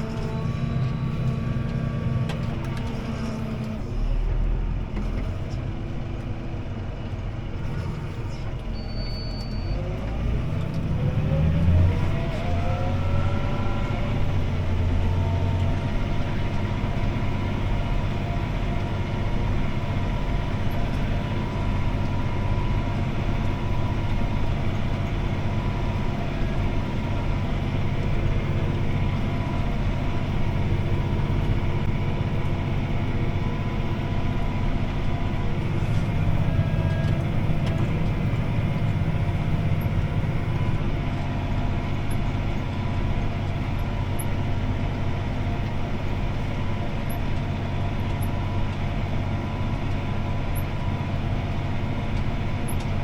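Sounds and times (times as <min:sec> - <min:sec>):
tractor engine revving under load: 0:09.8 - 0:20.0.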